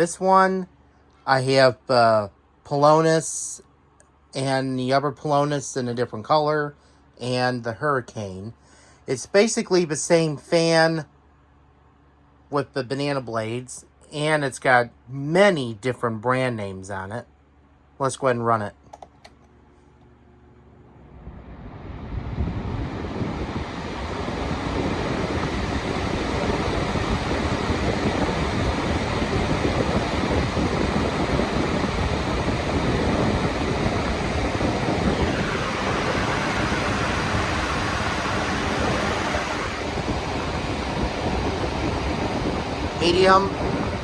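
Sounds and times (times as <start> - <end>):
box fan whooshing: 20.7 - 44.0.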